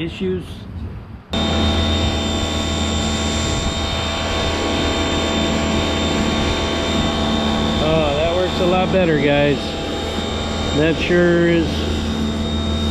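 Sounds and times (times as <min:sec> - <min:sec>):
pressure washer spraying concrete: 0:07.8 - 0:09.6.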